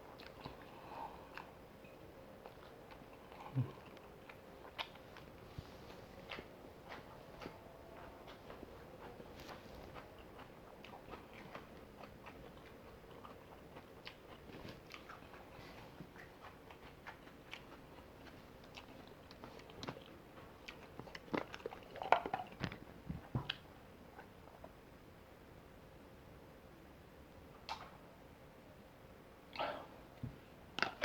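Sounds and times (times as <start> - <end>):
person chewing food: 0.0 - 24.8.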